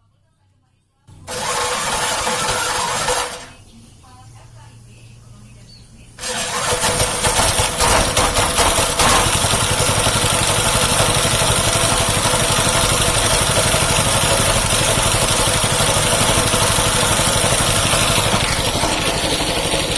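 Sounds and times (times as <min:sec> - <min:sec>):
compressor engine idling: 0:01.1 - 0:03.6, 0:06.2 - 0:19.9.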